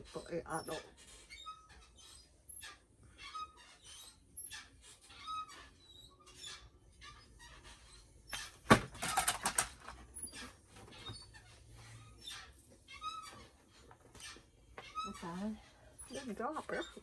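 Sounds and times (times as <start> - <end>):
plastic doll parts clicking and creaking: 8.4 - 11.0.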